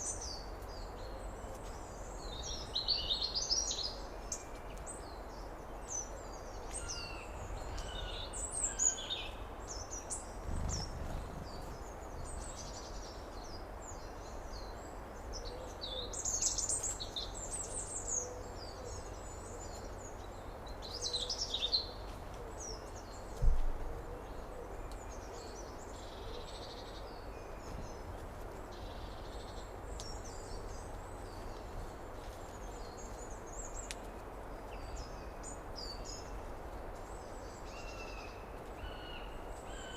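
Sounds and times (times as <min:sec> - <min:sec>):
birds chirping and singing: 0:00.0 - 0:14.8
steady low rumble: 0:10.3 - 0:12.8
dull low thumps: 0:10.4 - 0:11.8.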